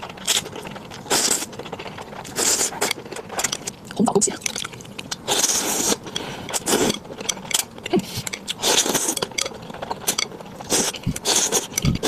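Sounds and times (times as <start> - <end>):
slurping noodles and soup: 0.3 - 3.3, 5.1 - 7.1, 8.0 - 9.3, 10.0 - 12.0.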